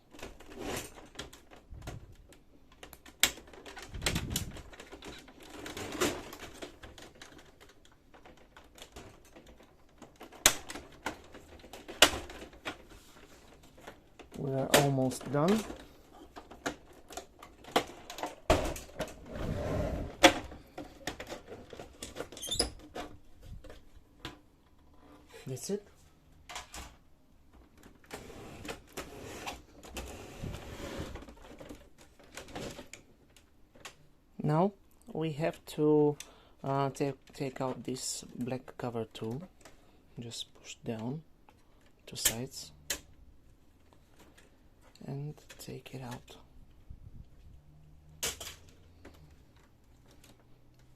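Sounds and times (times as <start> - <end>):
plastic parts clicking and knocking: 0.0 - 19.3, 20.1 - 30.1, 31.1 - 34.1, 41.4 - 46.8, 48.1 - 50.9
plastic scraping and rubbing: 0.0 - 25.3, 27.5 - 34.0.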